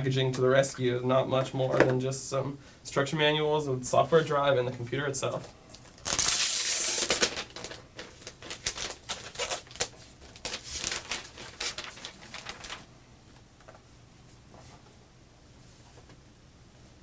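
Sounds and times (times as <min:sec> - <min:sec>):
hands handling laptop and packaging: 0:05.8 - 0:12.9.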